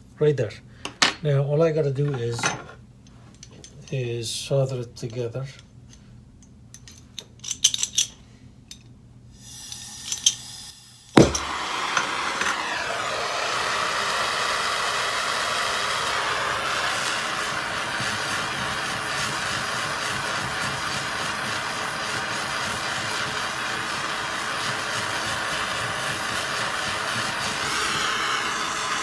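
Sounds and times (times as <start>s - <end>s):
gas torch hissing: 9.3s - 29.0s
torch lighting with a pop: 9.7s - 29.0s.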